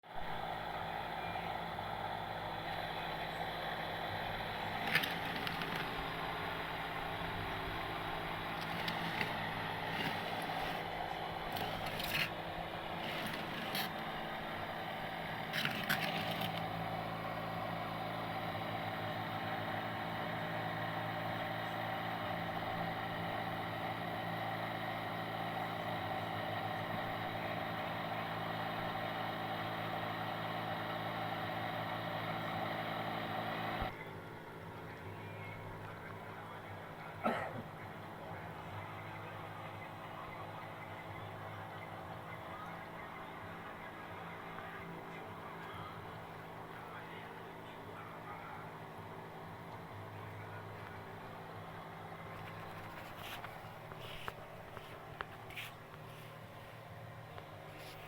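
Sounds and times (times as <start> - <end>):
motor humming: 0.0 - 34.1
sharp clicks and clatters: 4.6 - 6.2, 8.4 - 10.9, 11.5 - 14.2, 15.4 - 16.8.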